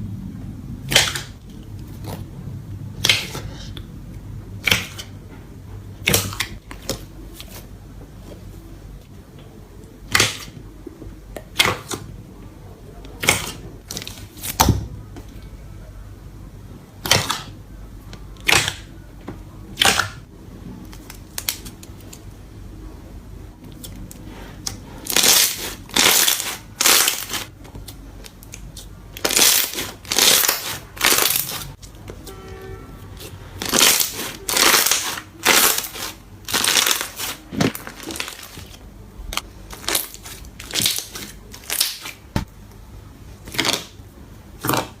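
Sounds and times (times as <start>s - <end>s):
slime squishing: 0.8s - 3.9s, 4.6s - 5.2s, 6.0s - 8.7s, 9.9s - 10.7s, 11.3s - 12.2s, 13.0s - 15.4s, 17.0s - 17.6s, 18.2s - 19.0s, 19.7s - 22.3s, 23.6s - 32.3s, 33.0s - 42.6s, 43.3s - 45.0s.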